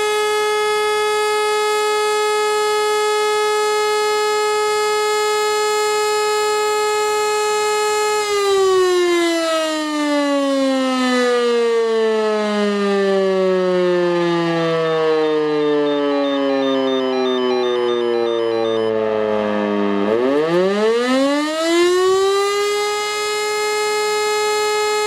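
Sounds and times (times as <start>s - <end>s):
electric motor siren: 4.0s - 25.0s.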